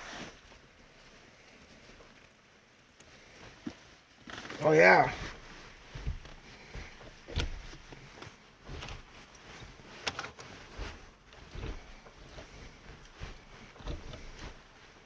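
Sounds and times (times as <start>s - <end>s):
faint rustling: 0.0s - 15.0s
gear lever knocking and clicking: 6.0s - 8.1s.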